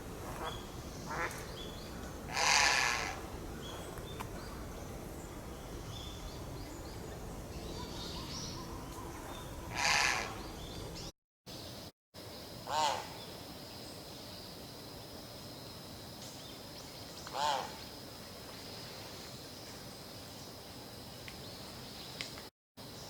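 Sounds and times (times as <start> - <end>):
heron croaking calls: 0.3 - 3.7, 7.8 - 10.6, 12.7 - 13.2, 17.3 - 17.8.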